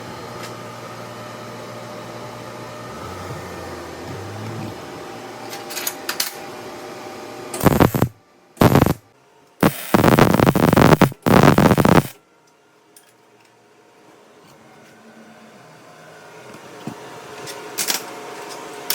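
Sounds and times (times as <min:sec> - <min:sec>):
electrical hum of machinery: 0:00.0 - 0:18.9
abrupt bursts of noise: 0:07.6 - 0:09.0, 0:09.6 - 0:12.2
short crackles: 0:07.6 - 0:09.0, 0:09.6 - 0:12.1.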